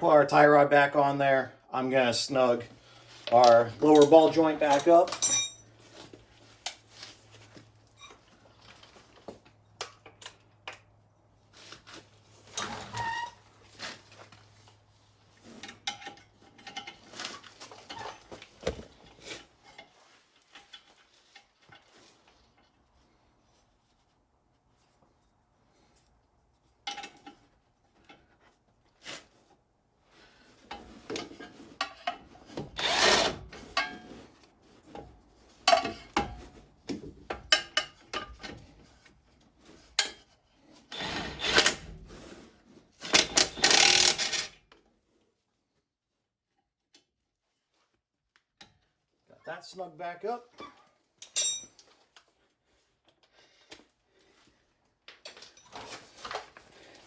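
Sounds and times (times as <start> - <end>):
hand tools clinking on metal: 3.3 - 5.8, 51.2 - 52.1.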